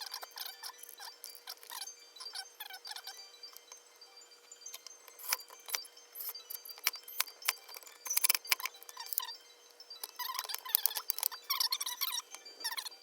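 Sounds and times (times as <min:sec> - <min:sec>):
small metal parts clinking: 0:04.7 - 0:09.3, 0:10.0 - 0:12.9.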